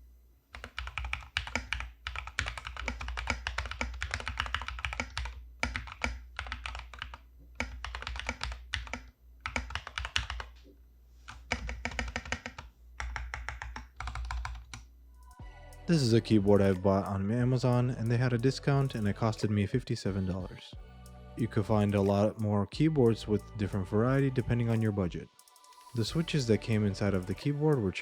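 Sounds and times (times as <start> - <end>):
mechanical keyboard typing: 0.6 - 10.6, 11.3 - 15.4, 16.0 - 17.1, 21.6 - 23.2
steady low hum: 14.9 - 25.4.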